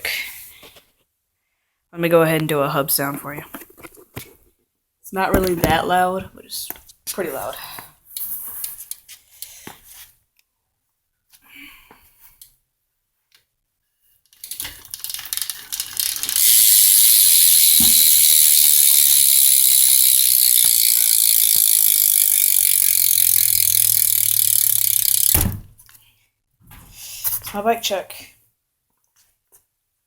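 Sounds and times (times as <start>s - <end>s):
bicycle hub ratcheting buzz: 14.4s - 25.6s.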